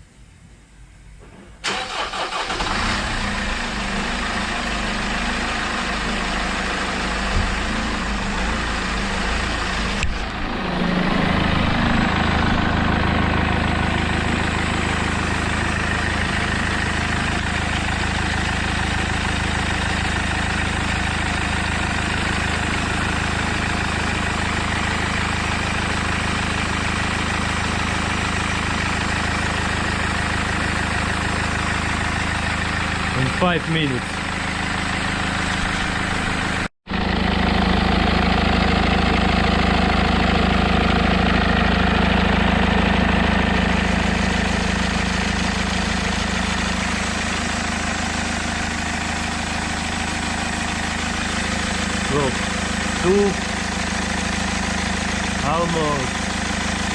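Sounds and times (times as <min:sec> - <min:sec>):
starter motor cranking engine: 0:01.6 - 0:06.0, 0:30.4 - 0:56.9
diesel engine idling: 0:01.6 - 0:56.9.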